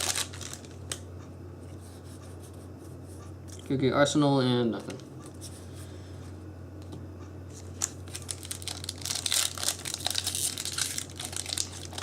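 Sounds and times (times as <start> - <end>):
foil wrapper crinkling and tearing: 0.0 - 1.0, 7.8 - 12.0.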